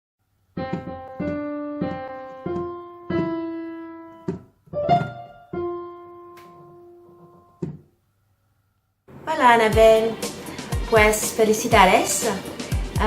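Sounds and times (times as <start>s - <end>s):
slow piano melody: 0.6s - 7.9s.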